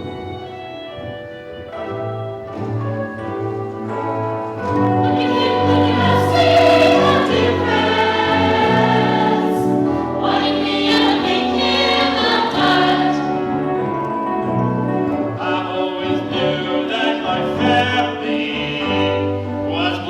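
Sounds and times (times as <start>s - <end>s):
instrumental accompaniment: 0.0s - 20.0s
ensemble singing in chorus: 4.8s - 20.0s.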